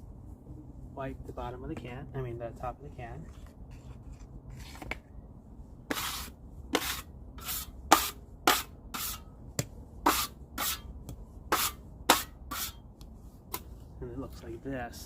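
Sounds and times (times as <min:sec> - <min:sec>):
taping knife scraping bucket: 0:05.9 - 0:09.2, 0:10.1 - 0:10.9, 0:11.5 - 0:12.8.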